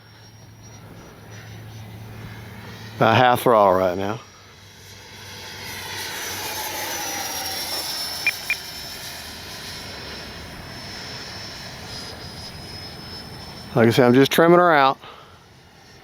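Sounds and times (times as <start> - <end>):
rc jet whine passing: 0.0 - 16.0
short beeps: 8.2 - 8.6.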